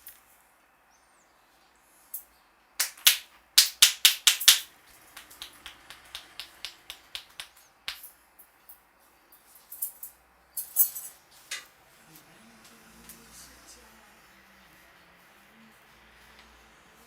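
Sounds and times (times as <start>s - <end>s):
hands snapping on head: 2.8s - 8.1s.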